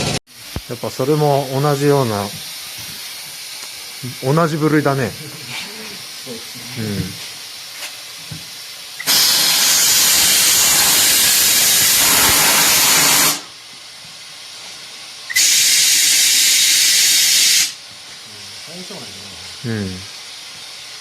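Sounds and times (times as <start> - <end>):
compressed air hissing: 0.0 - 13.6, 14.8 - 17.8.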